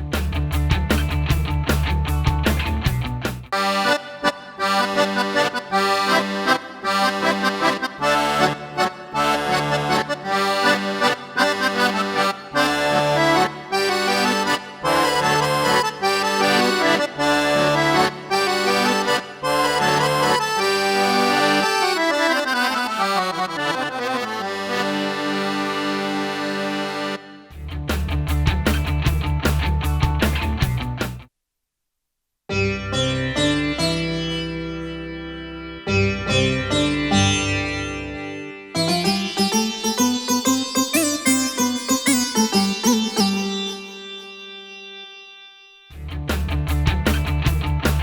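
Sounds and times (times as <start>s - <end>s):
pulsing bass accompaniment: 0.0s - 3.8s, 24.4s - 31.2s, 32.5s - 43.7s, 46.0s - 48.0s
keyboard accordion voice tune: 3.6s - 27.5s, 38.7s - 45.3s.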